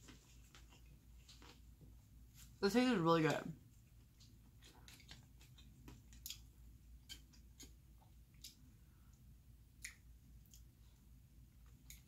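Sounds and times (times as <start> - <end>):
person chewing noodles: 3.8 - 12.0.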